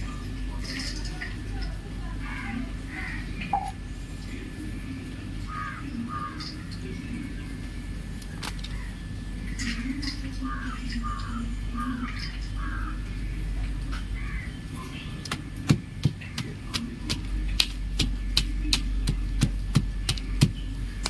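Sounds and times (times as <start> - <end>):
chalk crumbling with sharp cracks: 15.3 - 21.0.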